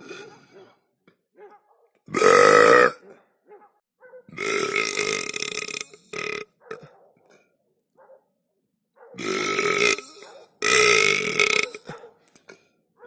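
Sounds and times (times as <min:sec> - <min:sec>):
person belching: 0:02.1 - 0:03.0, 0:04.3 - 0:06.6, 0:09.2 - 0:12.0.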